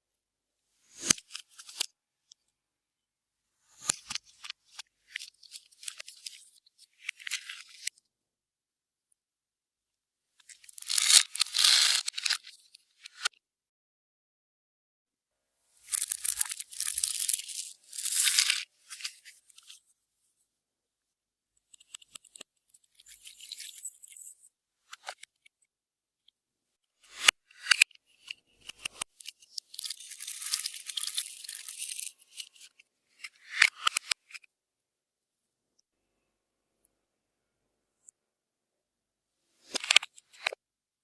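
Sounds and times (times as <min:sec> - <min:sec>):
slime crackling and tearing: 0:10.7 - 0:12.1, 0:15.9 - 0:18.6.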